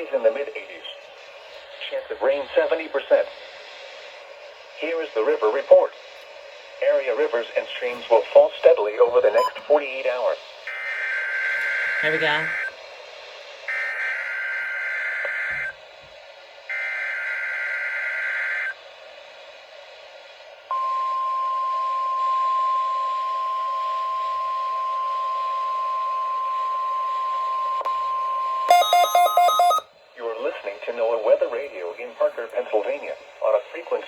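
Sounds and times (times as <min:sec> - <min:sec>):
steady warning alarm tone: 0:09.3 - 0:09.7, 0:10.6 - 0:12.8, 0:13.7 - 0:15.8, 0:16.7 - 0:18.8, 0:20.7 - 0:29.9
choppy data bursts: 0:09.3 - 0:12.8, 0:28.4 - 0:29.8
chirping digital data bursts: 0:10.7 - 0:12.7, 0:28.7 - 0:29.8.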